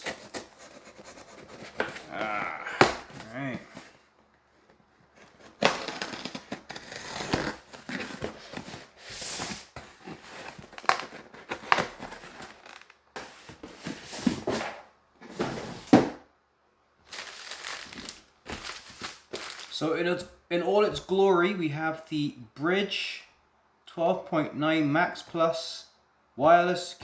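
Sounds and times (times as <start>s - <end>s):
packaging crinkling and rustling: 0.0s - 4.0s, 5.1s - 14.6s, 17.1s - 19.9s.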